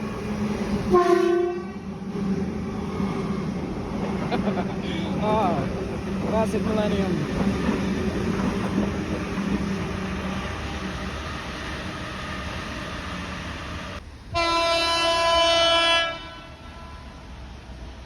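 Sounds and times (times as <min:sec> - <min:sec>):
steady train rumble: 0:00.0 - 0:18.0
electric train horn chord: 0:00.9 - 0:01.8, 0:14.4 - 0:17.1.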